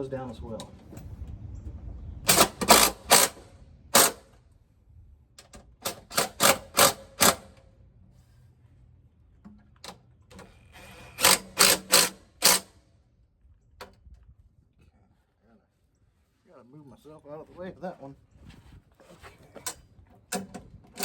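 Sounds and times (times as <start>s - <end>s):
ratcheting wrench clicking: 11.2s - 12.7s.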